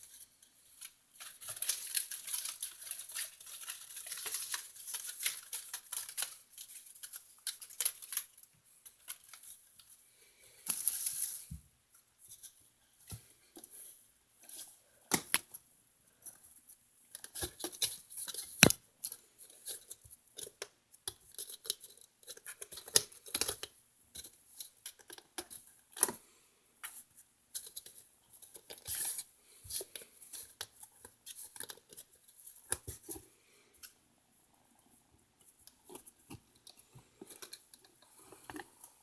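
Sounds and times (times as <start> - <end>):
kittens scratching and clicking: 0.0 - 9.9, 17.1 - 26.2, 26.9 - 34.0.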